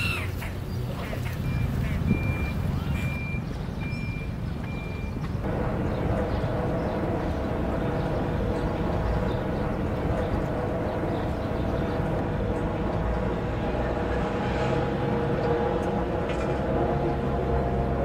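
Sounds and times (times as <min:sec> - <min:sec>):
machinery drone: 0:05.4 - 0:18.0.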